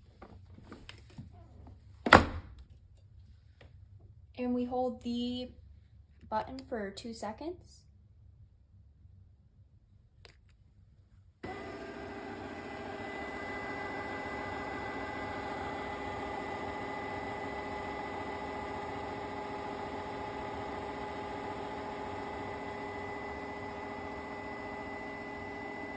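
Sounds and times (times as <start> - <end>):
floor cleaner motor whining: 11.4 - 25.9.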